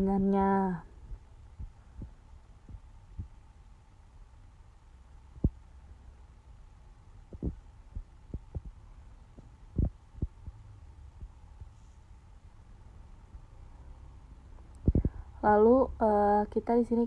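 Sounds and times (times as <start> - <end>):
steady low hum: 0.0 - 17.0
taps and thuds on a computer: 7.3 - 8.8.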